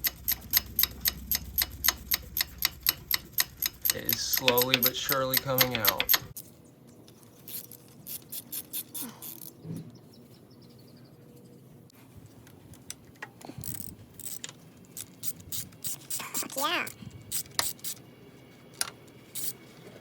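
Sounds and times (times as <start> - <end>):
ratchet wrench clicking: 0.0 - 6.4, 13.6 - 16.6, 17.3 - 18.0, 19.4 - 19.6.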